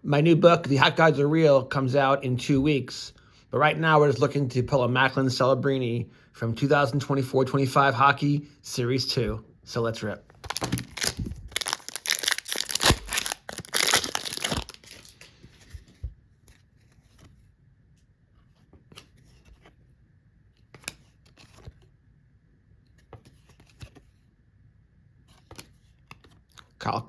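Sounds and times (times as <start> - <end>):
wrapper tearing: 10.4 - 15.3.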